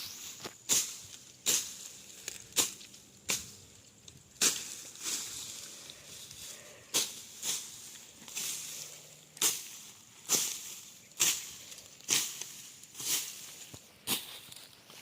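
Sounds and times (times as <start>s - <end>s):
hand tool hacking at ground: 9.4s - 10.6s.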